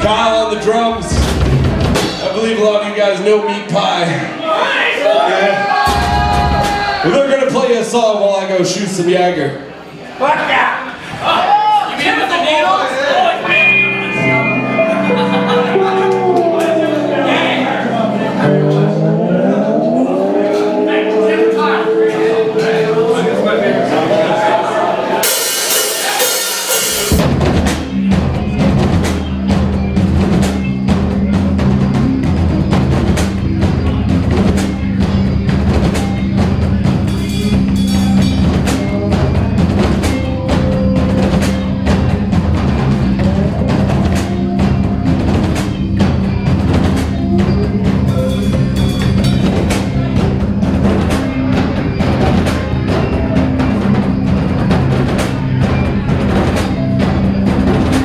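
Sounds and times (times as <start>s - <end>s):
loud bass guitar: 0.0s - 2.9s, 13.4s - 58.0s
drum kit groove: 0.0s - 3.8s, 5.8s - 8.1s, 13.5s - 24.2s, 24.9s - 58.0s
noisy crash: 1.0s - 2.7s
electric guitar: 13.4s - 24.6s.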